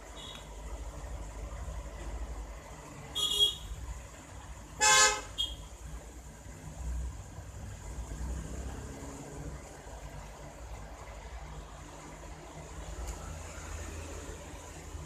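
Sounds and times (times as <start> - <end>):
car horn honking: 3.1 - 3.7, 4.8 - 5.6.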